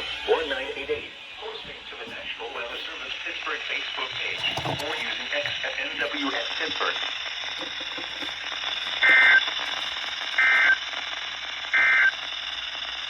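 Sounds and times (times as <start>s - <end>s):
radio hiss: 0.0s - 13.0s
digital data tone bursts: 9.0s - 9.6s, 10.3s - 10.9s, 11.7s - 12.3s.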